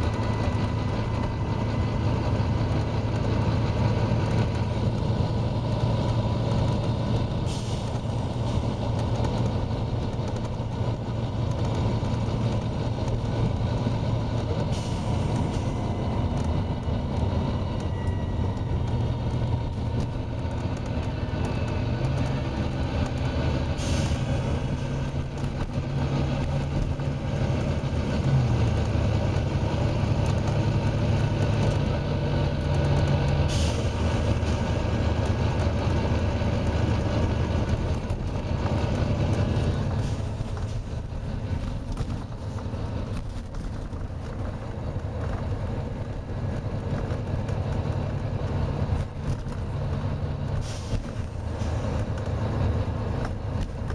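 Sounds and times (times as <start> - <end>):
bus diesel engine droning: 0.0 - 53.9
air brake hisses: 7.4 - 8.1, 23.8 - 24.4, 33.5 - 34.0, 50.6 - 51.9.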